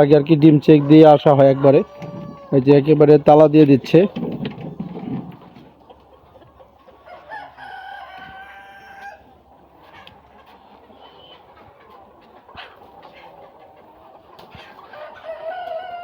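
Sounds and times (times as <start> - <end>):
rooster crowing: 1.7 - 2.6, 7.1 - 9.2, 15.0 - 16.0.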